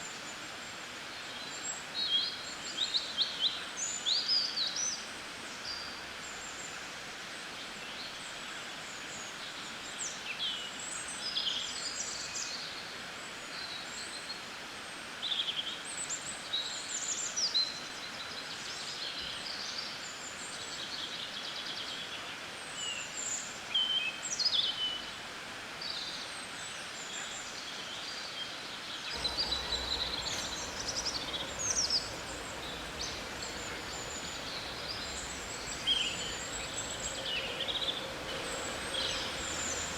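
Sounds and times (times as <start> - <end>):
low rumble: 29.2 - 39.9
songbirds chirping and singing: 29.2 - 39.9
steady background hiss: 29.2 - 39.9.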